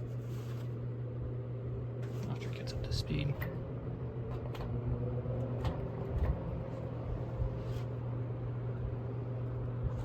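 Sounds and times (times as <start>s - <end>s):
box fan motor hum: 0.0s - 10.0s.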